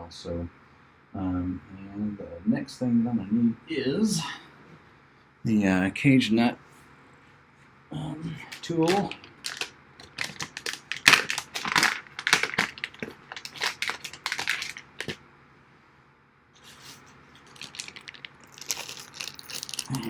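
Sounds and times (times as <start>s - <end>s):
hardware parts clattering: 8.5s - 15.2s, 17.4s - 20.0s.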